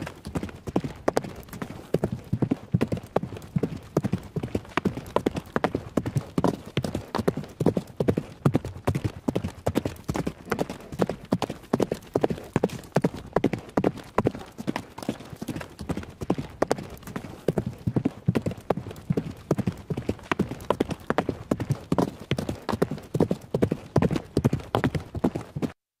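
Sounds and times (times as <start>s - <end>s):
horse hoofbeats galloping: 0.0s - 25.8s.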